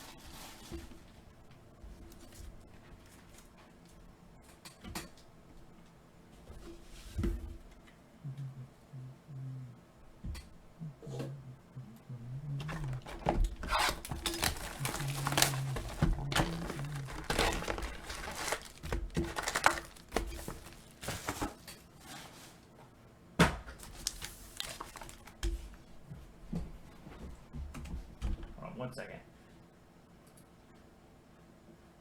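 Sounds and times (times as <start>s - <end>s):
foil wrappers tearing and crinkling: 12.6s - 21.6s, 23.8s - 25.4s.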